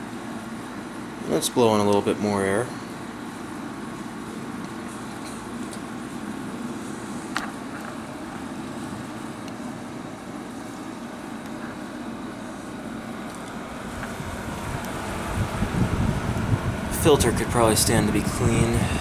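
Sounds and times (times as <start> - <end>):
air conditioner running: 0.0 - 19.0
air conditioner click: 10.4 - 19.0.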